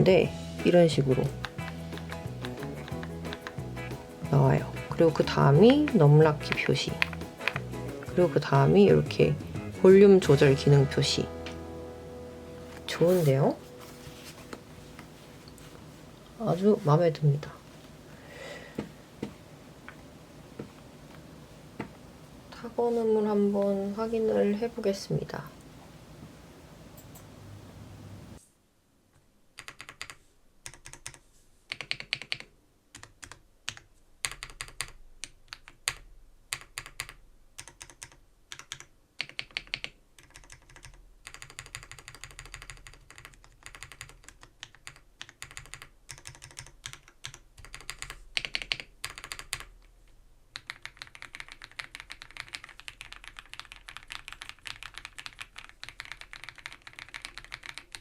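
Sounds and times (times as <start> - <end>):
mechanical keyboard typing: 0.9 - 3.6, 4.6 - 8.9, 29.6 - 49.8, 50.5 - 58.0.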